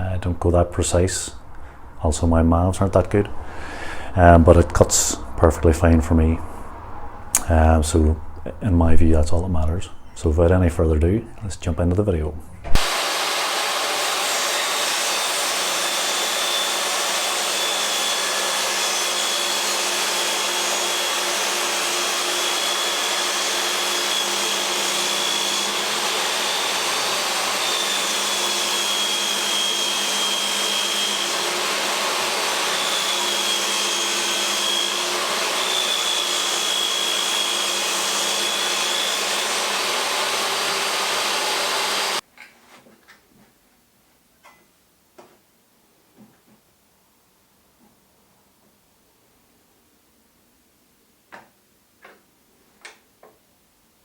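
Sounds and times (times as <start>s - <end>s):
table saw motor whine: 12.7s - 42.2s.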